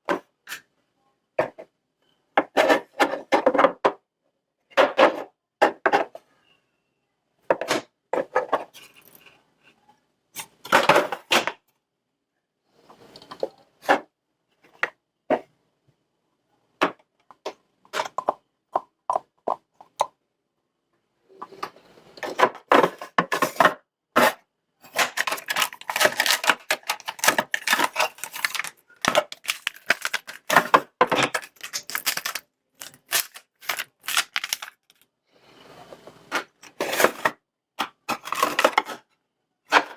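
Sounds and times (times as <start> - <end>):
small plastic pieces clicking: 25.0 - 35.0.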